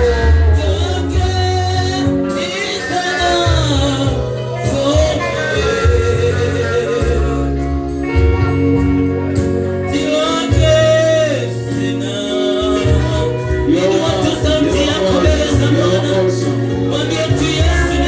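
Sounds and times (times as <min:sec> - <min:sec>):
gospel singing over a band: 0:00.0 - 0:18.0
held bass notes: 0:00.0 - 0:18.0.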